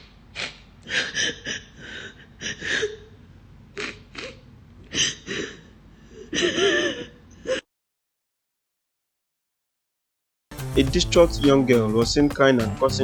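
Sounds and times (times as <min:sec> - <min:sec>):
woman sobbing: 0:00.9 - 0:03.2, 0:03.8 - 0:07.7.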